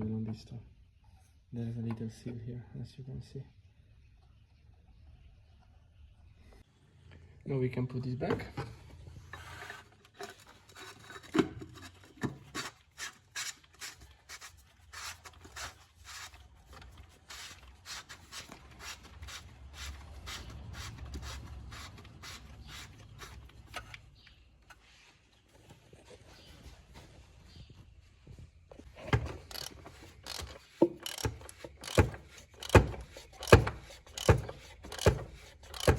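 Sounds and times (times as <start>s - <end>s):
cap screwing rubbing clicks: 29.1s - 35.9s.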